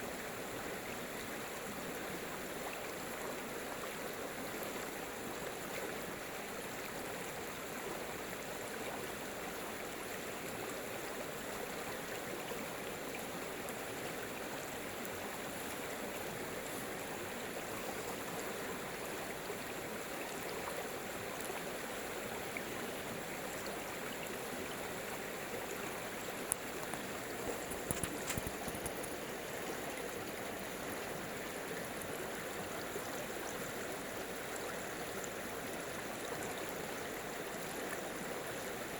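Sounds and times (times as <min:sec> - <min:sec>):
stream water running: 0:00.0 - 0:38.9
brief clicks: 0:26.8 - 0:29.2.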